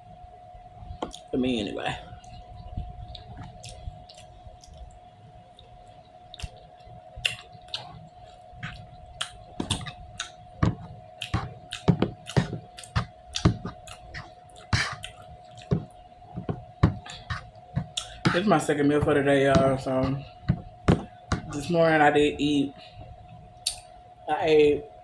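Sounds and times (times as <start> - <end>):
chewing food: 1.0 - 1.3, 2.1 - 21.7
wet mouth clicks and smacks: 3.1 - 5.0, 6.3 - 18.4, 23.6 - 23.9.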